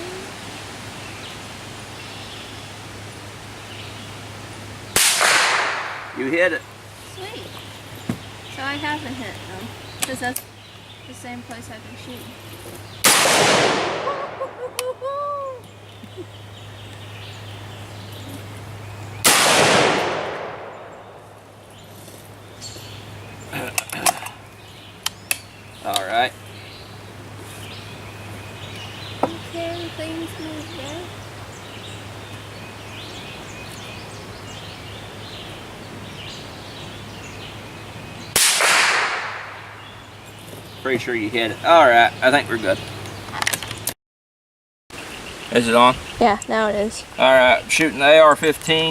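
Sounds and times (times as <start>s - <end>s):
rifle shot: 5.0s - 6.2s, 13.0s - 14.4s, 19.2s - 21.2s, 38.3s - 39.8s.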